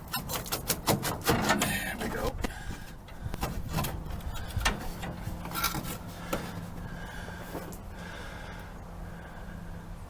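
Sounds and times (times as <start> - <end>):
knocks and scrapes of metal part: 0.0 - 2.2, 3.0 - 6.8
steady low hum: 1.2 - 10.0.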